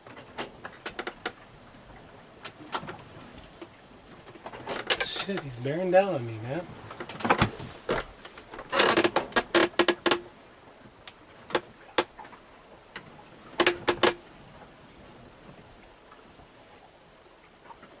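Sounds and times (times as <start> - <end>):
sharp clicks and knocks: 13.6 - 14.2.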